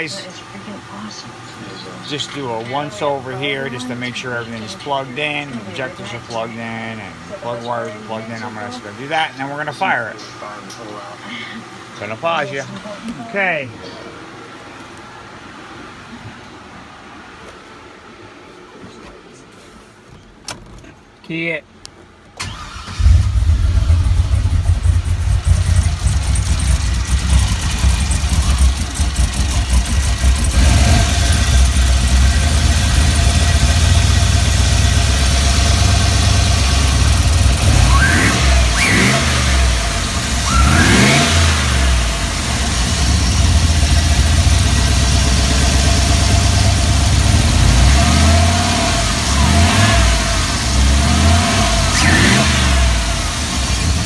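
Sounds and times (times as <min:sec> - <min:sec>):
engine idling unevenly with misfire: 0:00.0 - 0:14.9, 0:22.4 - 0:54.0
engine revving: 0:22.4 - 0:54.0.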